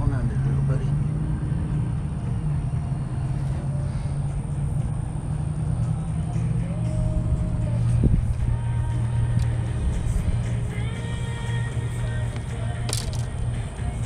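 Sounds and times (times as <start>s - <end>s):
low motor drone: 0.0s - 14.0s.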